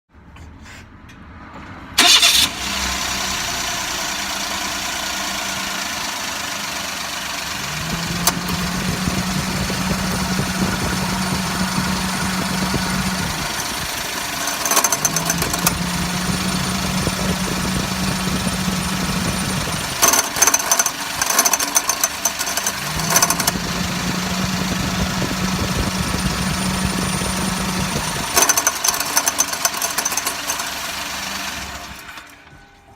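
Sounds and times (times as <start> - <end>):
car engine idling: 2.0 - 32.4
compressor clutch rattling: 7.5 - 31.9.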